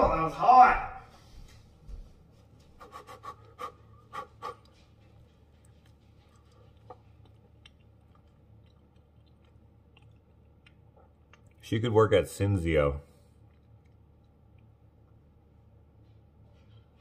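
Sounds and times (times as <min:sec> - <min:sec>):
person eating: 0:02.8 - 0:11.8, 0:13.1 - 0:15.4.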